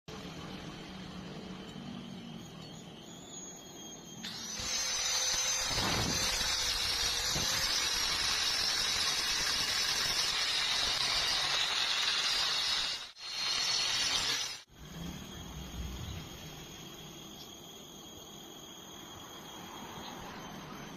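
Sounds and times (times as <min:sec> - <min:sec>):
welding arc hissing: 0:04.2 - 0:14.7.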